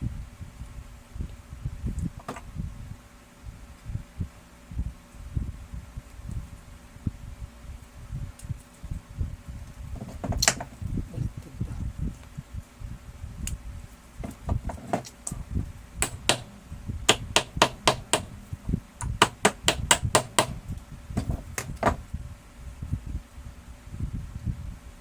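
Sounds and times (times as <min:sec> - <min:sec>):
hard parts tapping and clicking: 0:10.0 - 0:10.8, 0:14.2 - 0:15.4, 0:16.0 - 0:22.0
low handling rumble: 0:14.2 - 0:22.5.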